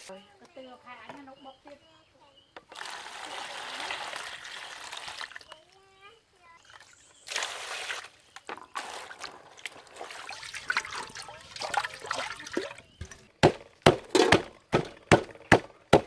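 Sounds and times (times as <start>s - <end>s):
water trickling and splashing: 2.7s - 13.6s
chopping on a cutting board: 13.4s - 16.0s.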